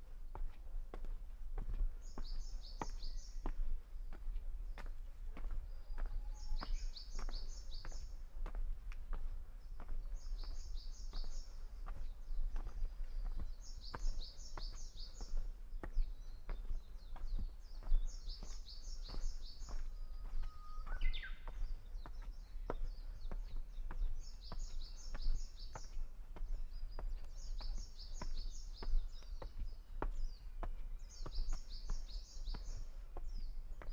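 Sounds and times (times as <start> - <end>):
bird singing a rising whistle: 5.8 - 6.9, 19.9 - 21.4
small bird twittering: 17.8 - 21.7.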